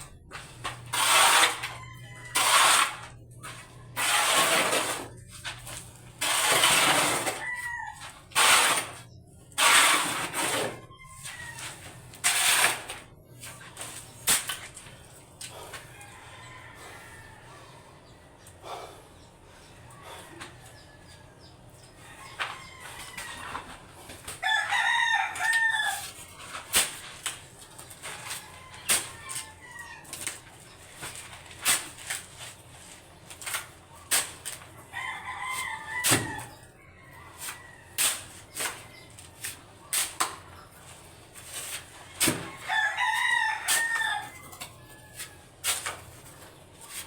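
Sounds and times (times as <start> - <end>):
rooster crowing: 1.5 - 3.0, 7.1 - 8.2, 15.8 - 17.8, 22.0 - 23.8, 24.4 - 26.2, 28.2 - 30.3, 34.9 - 38.2, 42.4 - 45.5.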